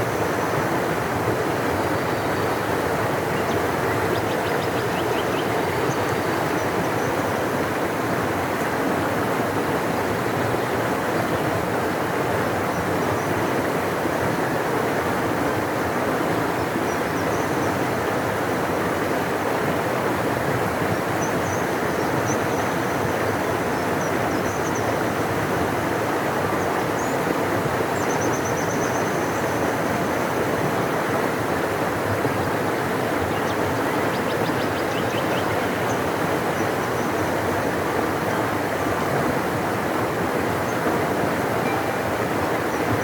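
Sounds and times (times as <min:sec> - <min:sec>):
river rushing: 0:35.4 - 0:43.0.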